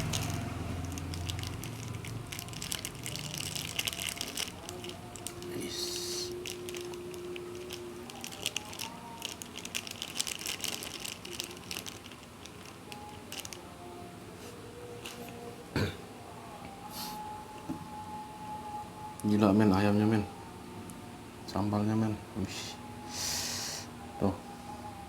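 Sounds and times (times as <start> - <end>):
food packaging crinkling: 0.0 - 13.7.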